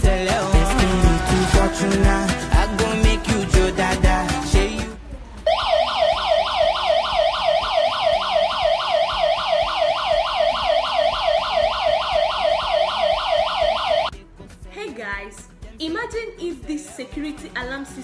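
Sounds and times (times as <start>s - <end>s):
alarm siren yelping wail: 5.4s - 14.1s.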